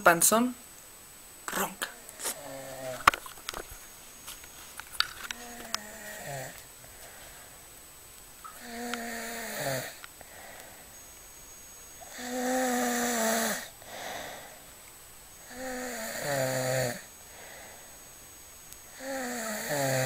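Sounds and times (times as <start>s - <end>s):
man snoring: 2.3s - 3.0s, 5.4s - 6.6s, 8.6s - 10.9s, 12.0s - 14.6s, 15.4s - 17.9s, 18.9s - 20.0s.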